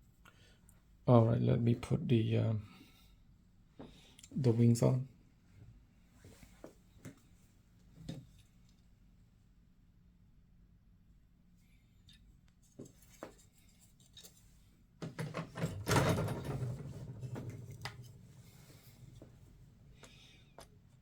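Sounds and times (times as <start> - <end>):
plastic parts knocking and rubbing: 15.0 - 19.4.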